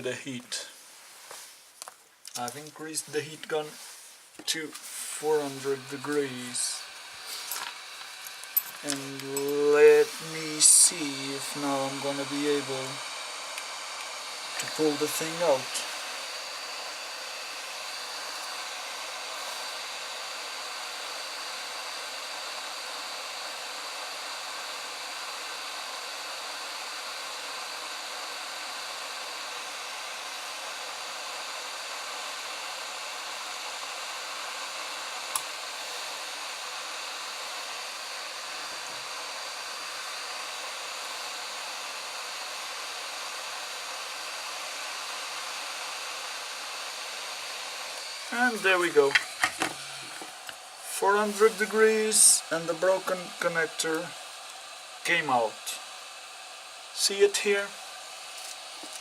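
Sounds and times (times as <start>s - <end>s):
hot air nozzle hissing: 2.4s - 59.0s.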